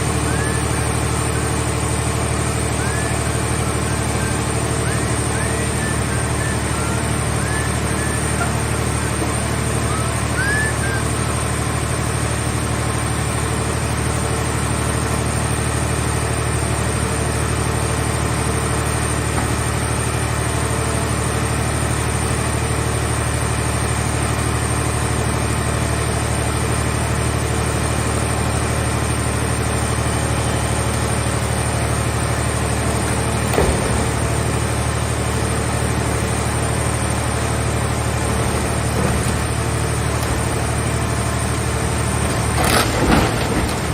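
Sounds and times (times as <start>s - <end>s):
heavy engine humming: 0.0s - 43.9s.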